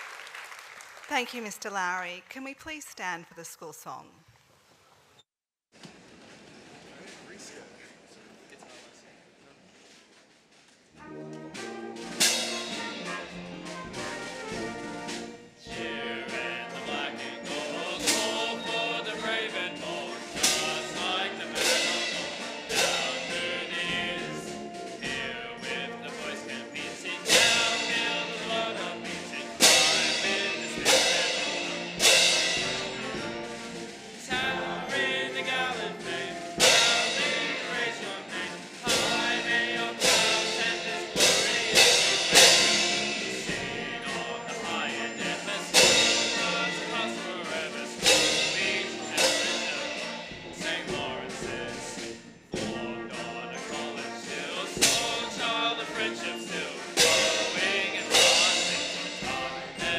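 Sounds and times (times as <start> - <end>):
choir singing with band: 11.6 - 59.9
loud drum hits: 12.0 - 53.1, 54.6 - 59.9.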